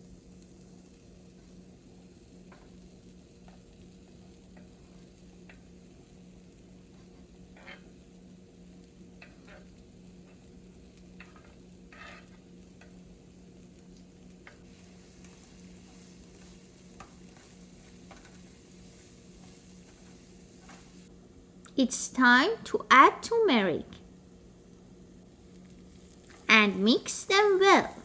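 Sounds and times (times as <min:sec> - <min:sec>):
onions sizzling in oil: 0:00.0 - 0:28.0
stirring scrapes and clicks: 0:06.9 - 0:08.0, 0:09.2 - 0:10.4, 0:11.2 - 0:13.0, 0:14.4 - 0:21.0.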